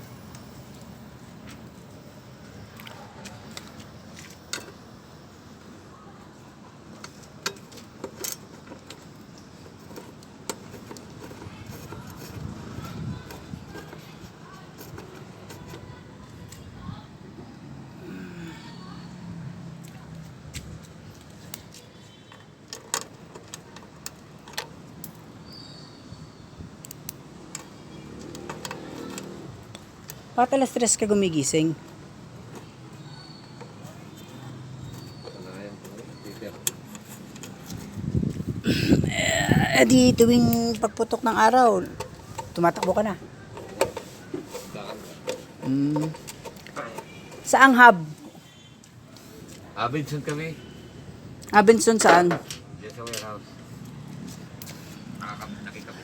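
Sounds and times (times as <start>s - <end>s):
low steady background noise: 0.0s - 56.0s
clicks and knocks on lock parts: 21.6s - 25.3s.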